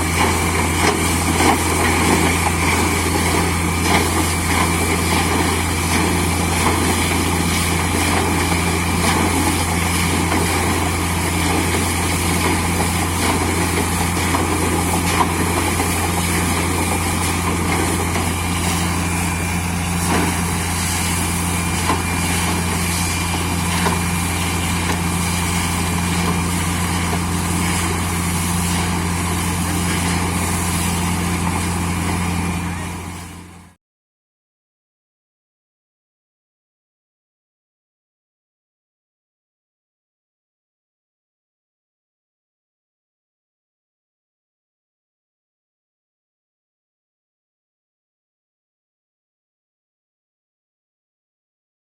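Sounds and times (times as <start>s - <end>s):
drilling rig engine and compressor hum: 0.0s - 33.8s.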